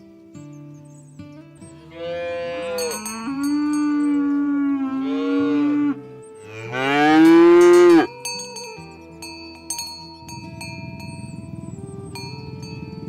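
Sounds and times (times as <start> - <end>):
ox mooing: 1.7 - 8.2.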